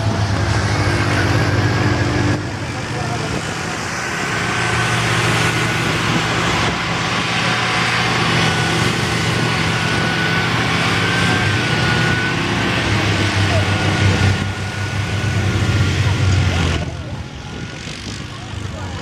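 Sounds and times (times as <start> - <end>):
car engine running: 0.0 - 19.0.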